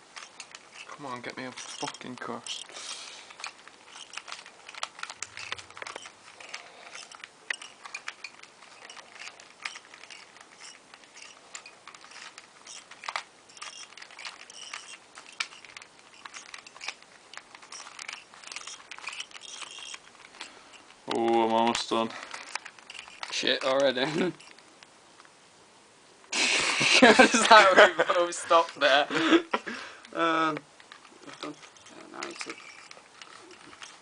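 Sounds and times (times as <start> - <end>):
puzzle cubes clicking and rattling: 0.0 - 24.6, 30.3 - 34.0.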